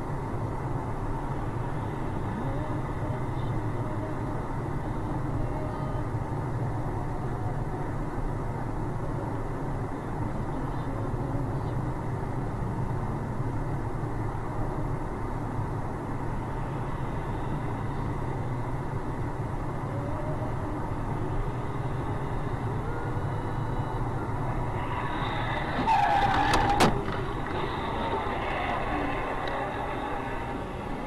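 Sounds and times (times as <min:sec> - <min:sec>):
car road noise: 0:00.0 - 0:31.0
brief squeal: 0:24.8 - 0:27.0.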